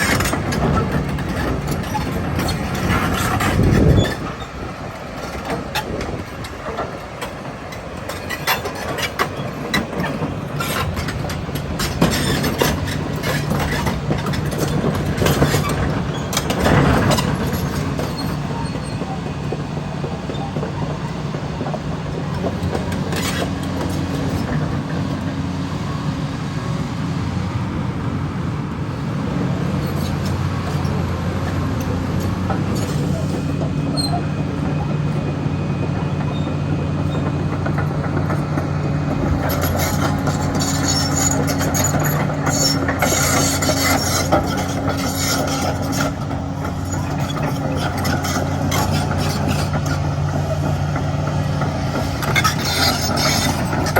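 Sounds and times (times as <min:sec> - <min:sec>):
metallic clanks and rattles: 0:00.0 - 0:19.2, 0:36.0 - 0:53.9
excavator diesel engine: 0:00.0 - 0:53.9.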